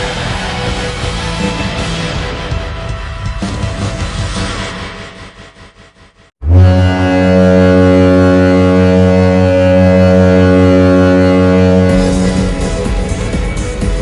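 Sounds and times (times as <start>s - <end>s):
goal horn blast: 6.4s - 13.4s
arena music: 6.4s - 14.0s.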